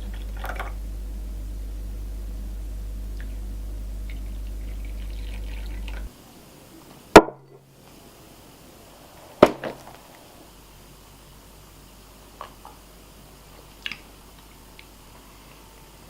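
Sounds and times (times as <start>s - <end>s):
steady low hum: 0.0s - 9.2s.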